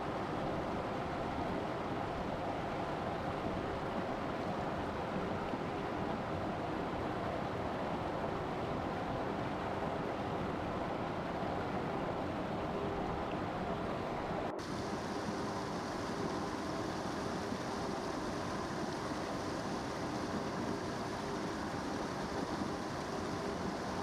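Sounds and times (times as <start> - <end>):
river water rushing: 8.0 - 24.0.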